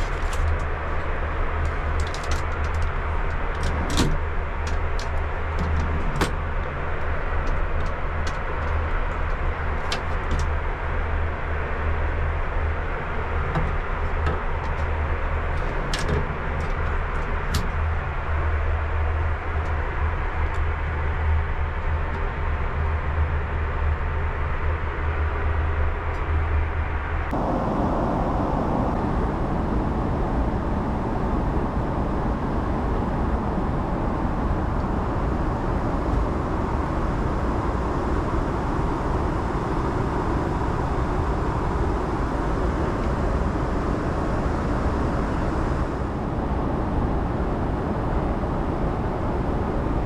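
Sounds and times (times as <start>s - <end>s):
jet cabin rush and rumble: 0.0s - 50.0s.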